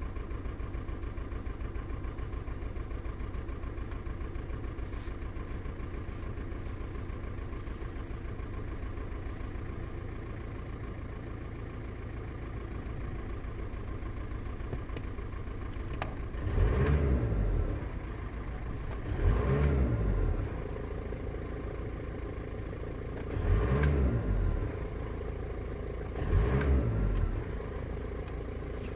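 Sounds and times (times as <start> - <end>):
car engine idling: 0.0 - 28.9
engine revving in throttle blips: 16.0 - 21.8, 23.0 - 28.9.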